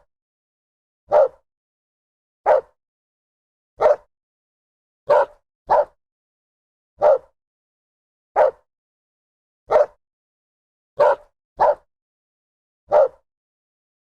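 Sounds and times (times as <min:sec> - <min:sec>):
dog barking: 0:01.1 - 0:01.4, 0:02.4 - 0:02.8, 0:03.8 - 0:04.1, 0:05.1 - 0:06.0, 0:07.0 - 0:07.4, 0:08.4 - 0:08.7, 0:09.7 - 0:10.0, 0:11.0 - 0:11.9, 0:12.9 - 0:13.3.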